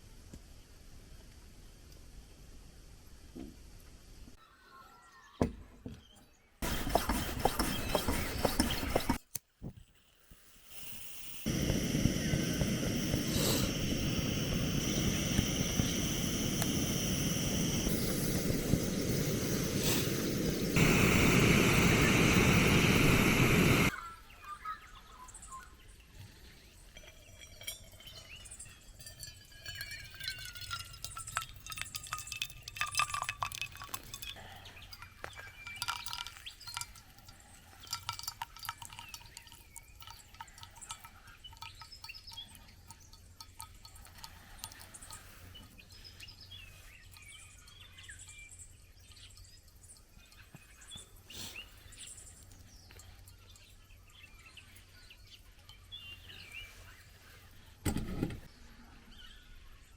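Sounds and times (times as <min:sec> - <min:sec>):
birdsong: 0:04.5 - 0:09.2, 0:11.4 - 0:31.0, 0:34.0 - 0:59.9
liquid pouring: 0:10.6 - 0:23.9, 0:27.0 - 0:34.4, 0:35.0 - 0:41.9
small clicks and clinks: 0:26.9 - 0:45.4.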